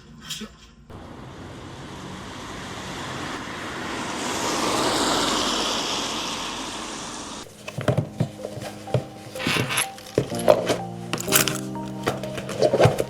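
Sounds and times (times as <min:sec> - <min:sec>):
vehicle tyres hissing on wet road: 0:01.0 - 0:07.5.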